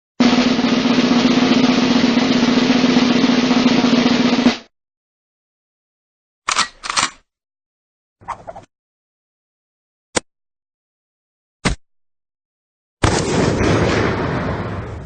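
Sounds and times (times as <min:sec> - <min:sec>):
snare drum roll: 0:00.2 - 0:04.7.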